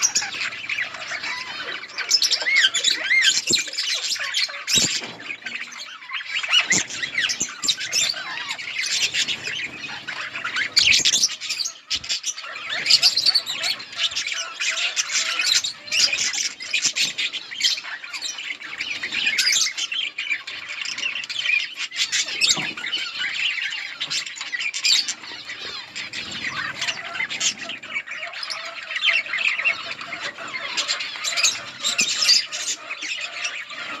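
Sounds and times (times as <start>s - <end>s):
budgerigars chattering: 0.0s - 34.0s.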